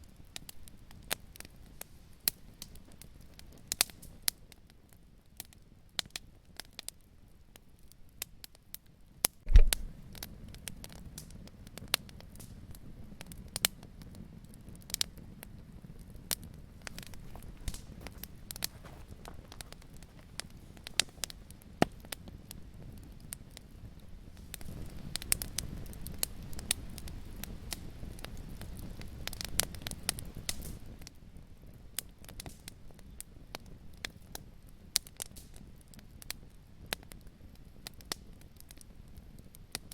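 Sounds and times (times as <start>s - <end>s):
wood fire crackling: 0.0s - 39.9s
rush of flame: 9.5s - 10.0s, 16.6s - 22.1s.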